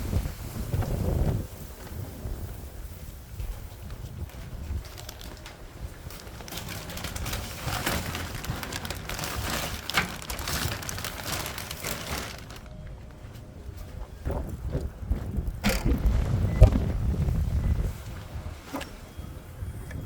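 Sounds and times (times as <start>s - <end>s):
gusty wind on microphone: 0.0s - 12.6s, 13.6s - 20.0s
clicks and rustles: 3.8s - 16.9s.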